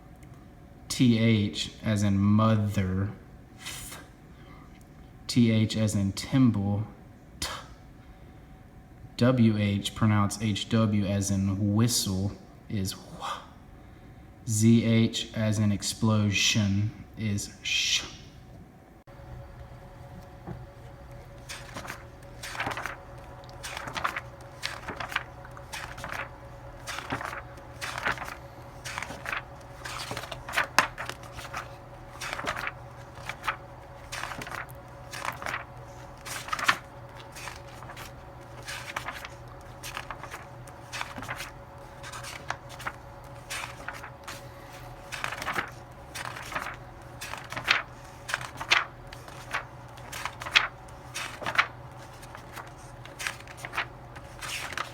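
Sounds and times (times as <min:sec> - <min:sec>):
low electrical hum: 0:00.0 - 0:54.9
rustling and clicking handling noise: 0:19.4 - 0:54.9.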